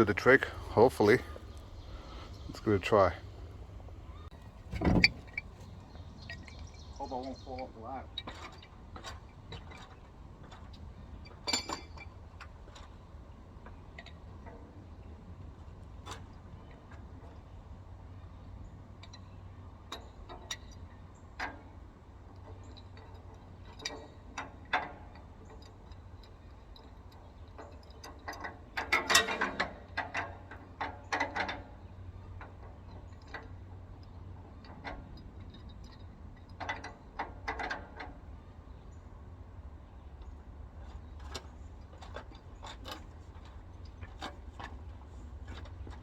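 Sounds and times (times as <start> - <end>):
metal tools clanking on fitting: 6.2 - 12.9, 22.4 - 38.2.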